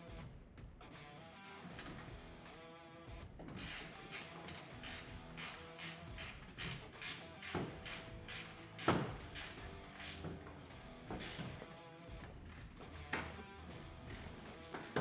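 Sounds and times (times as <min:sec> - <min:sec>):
ratchet wrench clicking: 0:03.6 - 0:13.5.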